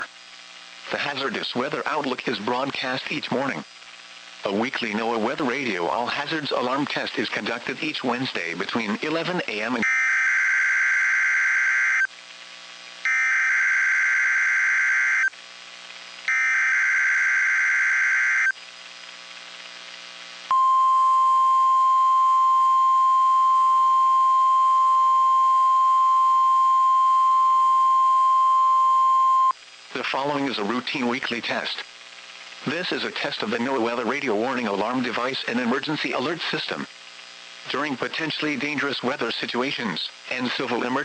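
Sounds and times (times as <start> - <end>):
steady warning alarm tone: 9.8 - 12.1, 13.1 - 15.3, 16.3 - 18.5.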